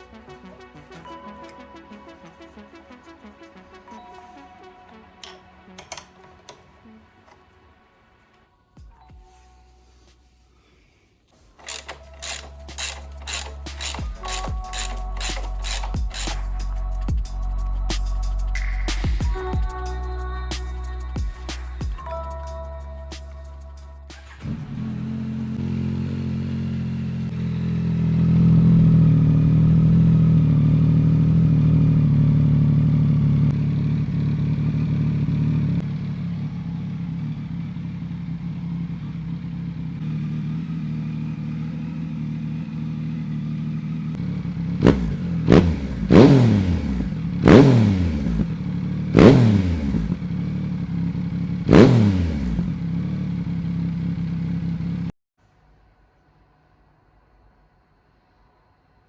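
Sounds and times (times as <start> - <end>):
motorcycle engine idling: 11.6 - 17.8, 24.2 - 55.1
motorcycle throttle blips: 24.2 - 55.1.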